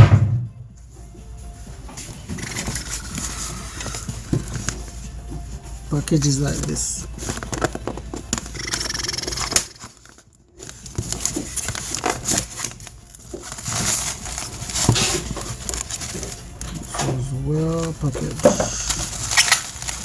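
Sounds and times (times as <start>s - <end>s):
packaging crinkling: 6.2s - 20.0s.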